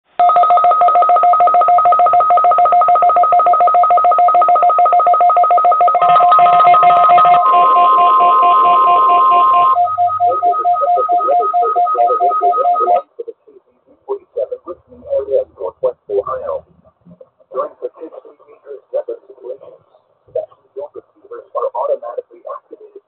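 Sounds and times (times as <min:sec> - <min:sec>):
steady high alarm tone: 0:00.2 - 0:13.0
person speaking: 0:10.2 - 0:23.0.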